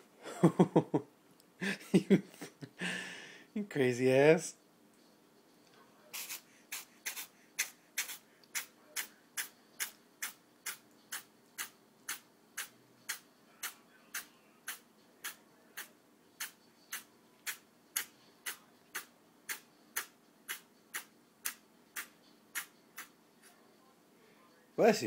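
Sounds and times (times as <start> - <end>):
kitten sneezing: 6.1 - 13.8.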